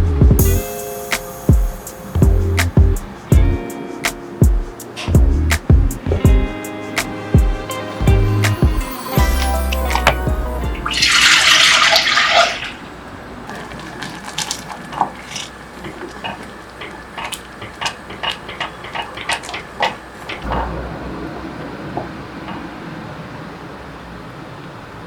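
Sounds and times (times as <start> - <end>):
tap running: 13.5 - 20.5.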